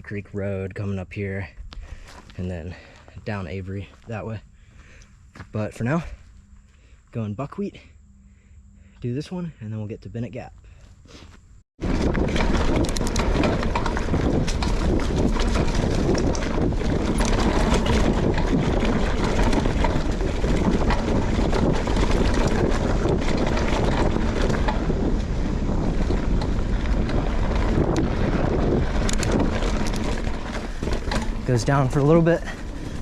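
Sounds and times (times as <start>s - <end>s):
bike rattling over ground: 0.0s - 6.7s, 11.8s - 33.0s
wind on microphone: 11.8s - 33.0s.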